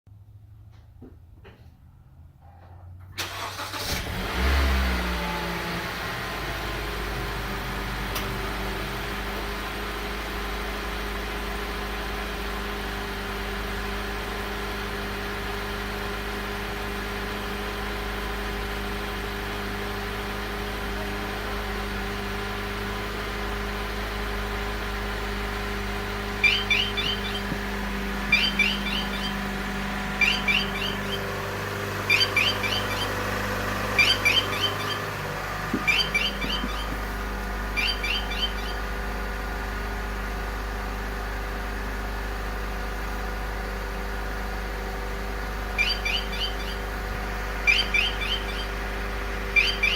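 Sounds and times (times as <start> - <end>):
car engine starting and idling: 0.1 - 49.9
high-pitched alarm chirps: 26.4 - 27.6, 28.3 - 29.5, 30.2 - 31.4, 32.0 - 33.2, 33.9 - 35.1, 35.7 - 37.0, 37.7 - 38.9, 45.7 - 46.9, 47.6 - 48.8, 49.5 - 49.9.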